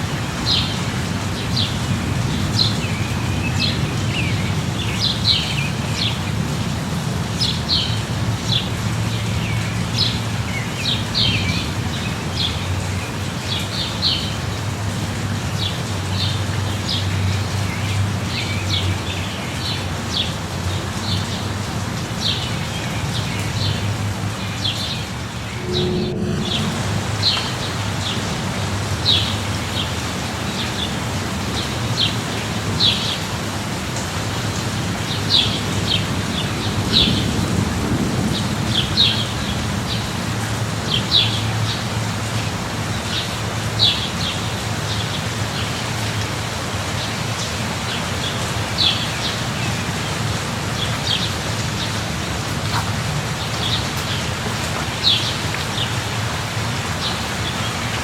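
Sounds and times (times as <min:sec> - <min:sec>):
steady rain falling: 0:00.0 - 0:58.0
low rumble: 0:25.0 - 0:27.9.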